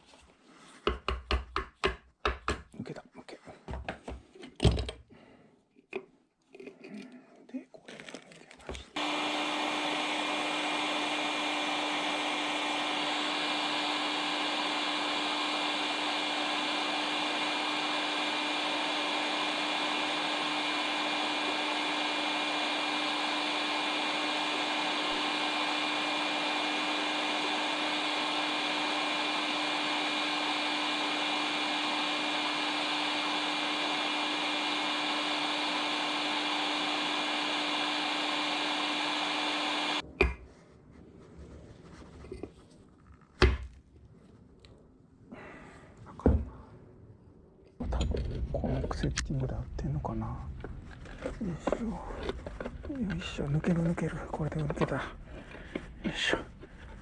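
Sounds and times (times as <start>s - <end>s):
hot-air blower running: 8.8s - 40.1s, 49.8s - 57.0s.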